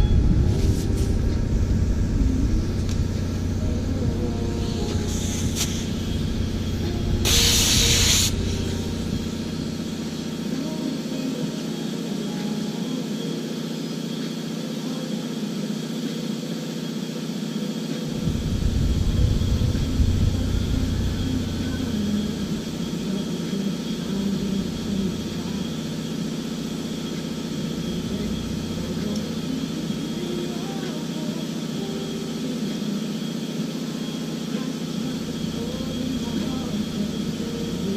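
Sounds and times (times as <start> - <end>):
deep rumble: 0.0 - 10.5, 18.1 - 30.2
engine running: 0.0 - 14.6, 15.4 - 37.9.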